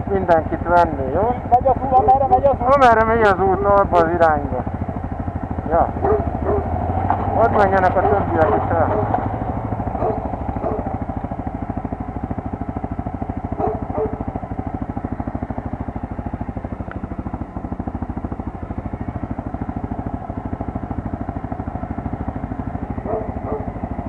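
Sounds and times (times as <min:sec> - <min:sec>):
quad engine running at low revs: 0:00.0 - 0:24.0.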